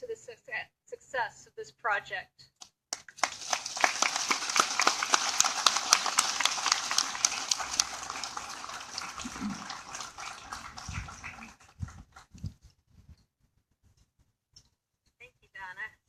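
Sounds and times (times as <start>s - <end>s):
crowd applauding: 3.0s - 12.5s.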